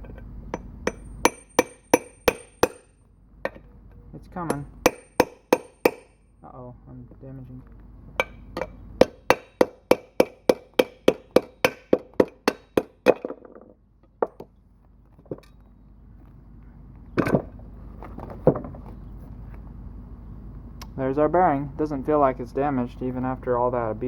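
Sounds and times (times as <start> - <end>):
hammer striking metal: 0.5 - 3.6, 4.4 - 6.2, 8.2 - 13.3.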